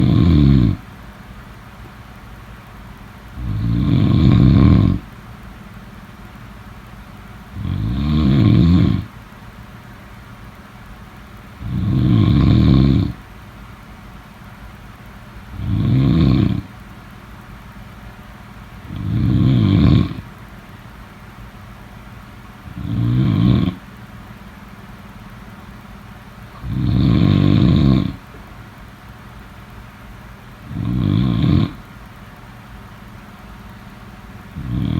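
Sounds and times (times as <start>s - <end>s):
person snoring: 0.0s - 0.8s, 3.4s - 5.1s, 7.6s - 9.1s, 11.6s - 13.2s, 15.5s - 16.7s, 18.9s - 20.2s, 22.7s - 23.8s, 26.5s - 28.2s, 30.6s - 31.8s, 34.6s - 34.9s.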